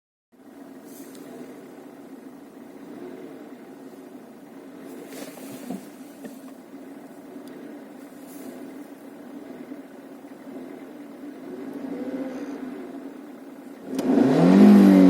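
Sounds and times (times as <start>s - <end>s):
car engine running at low revs: 0.3s - 15.0s
engine ticking noise: 0.4s - 15.0s
brief hiss: 0.8s - 1.4s, 5.0s - 6.4s.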